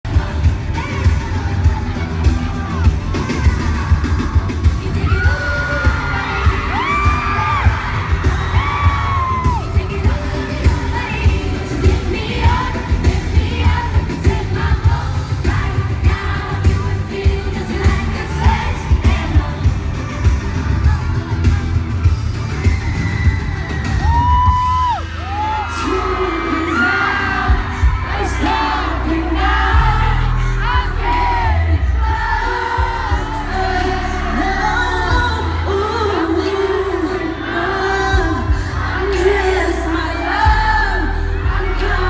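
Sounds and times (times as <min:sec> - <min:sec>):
heavy drum beat: 0:00.0 - 0:25.0
women singing pop music: 0:00.0 - 0:42.0.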